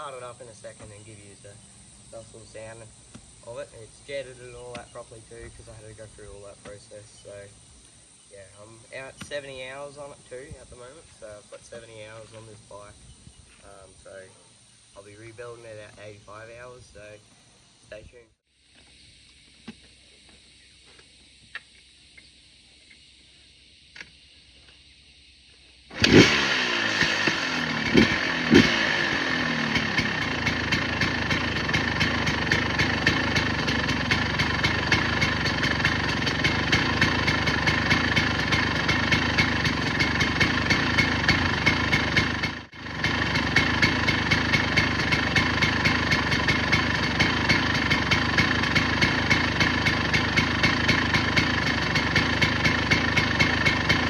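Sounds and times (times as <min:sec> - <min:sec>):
dirt bike engine revving and idling: 0:25.9 - 0:54.0.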